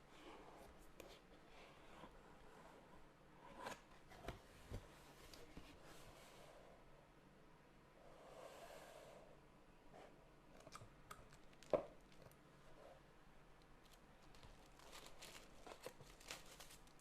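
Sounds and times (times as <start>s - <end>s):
packaging rustling: 13.8s - 17.0s.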